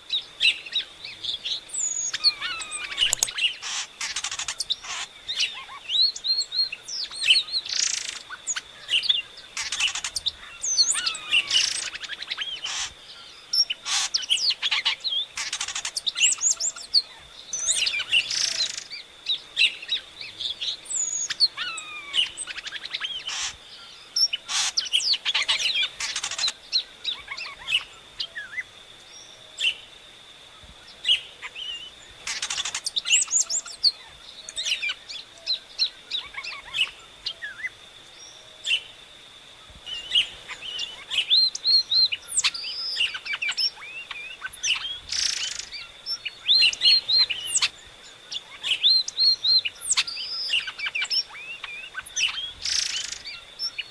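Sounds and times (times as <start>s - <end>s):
songbirds singing: 0.0s - 53.9s
thin steady high tone: 0.1s - 3.6s.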